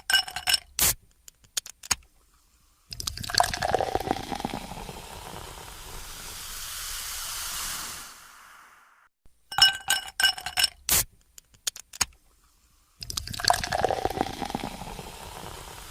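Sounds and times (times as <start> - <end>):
soda pouring and fizzing: 2.9 - 9.0, 13.0 - 15.9.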